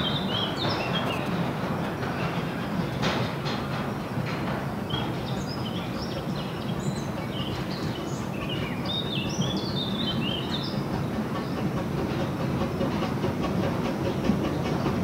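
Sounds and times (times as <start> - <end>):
small birds chirping: 0.0 - 1.4, 4.9 - 11.7
train rumbling on rails: 0.0 - 15.0.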